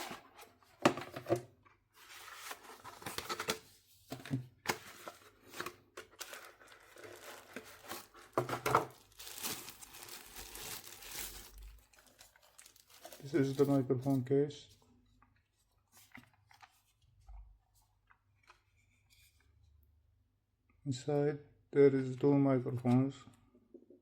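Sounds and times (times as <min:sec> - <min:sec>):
packaging tearing and crinkling: 0:06.2 - 0:13.8.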